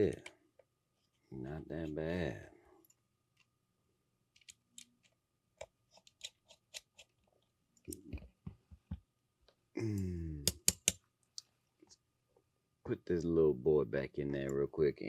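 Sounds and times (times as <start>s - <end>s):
tools clicking on small parts: 10.5s - 11.0s.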